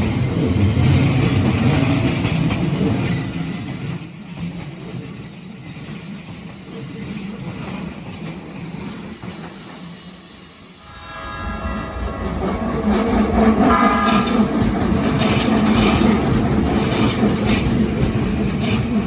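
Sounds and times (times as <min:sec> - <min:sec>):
electric train passing: 0:00.0 - 0:19.0
steady high tones: 0:10.6 - 0:15.6.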